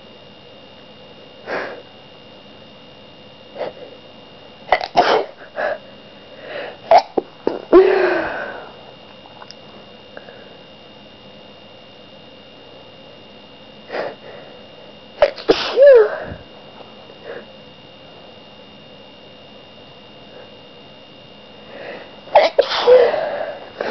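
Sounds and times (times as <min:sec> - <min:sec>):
person sneezing: 0:04.7 - 0:05.8, 0:06.8 - 0:08.7, 0:15.2 - 0:16.4, 0:22.3 - 0:23.9.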